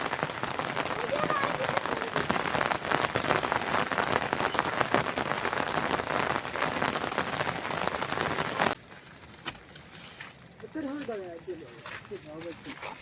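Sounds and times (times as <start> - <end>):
heavy rain: 0.0 - 8.8.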